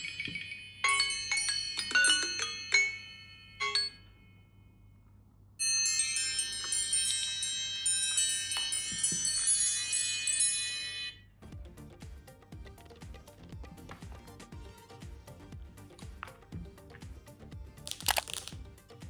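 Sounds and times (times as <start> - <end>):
chime-like phone ringtone: 0.0 - 4.4, 5.6 - 11.4
ringing bell notes ringtone: 0.0 - 4.6, 5.6 - 11.4.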